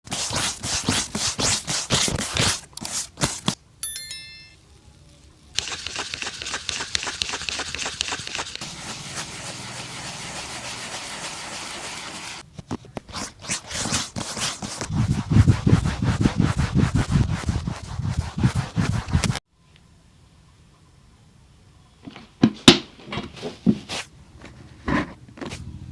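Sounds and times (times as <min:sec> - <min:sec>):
brush scrubbing a shoe: 0:00.1 - 0:03.6, 0:05.6 - 0:12.4, 0:13.2 - 0:19.4.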